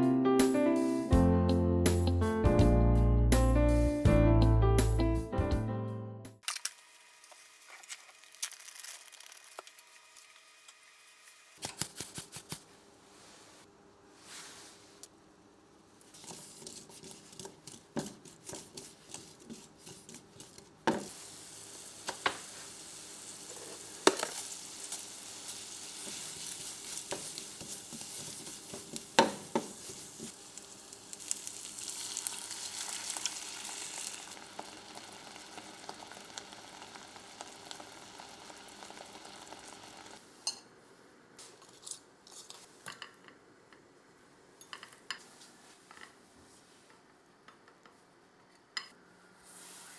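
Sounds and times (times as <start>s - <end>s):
food sizzling in a frying pan: 6.5s - 11.6s, 21.0s - 40.2s
utensil stirring and knocking pan: 16.2s - 21.1s, 26.0s - 30.3s.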